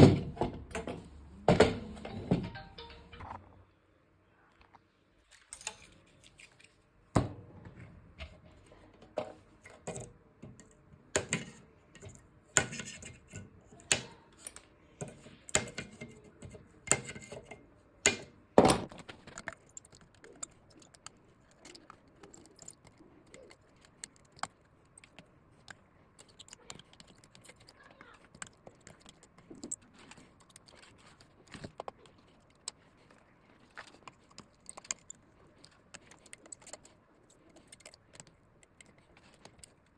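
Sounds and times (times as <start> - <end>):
tools clicking and knocking: 9.0 - 32.8.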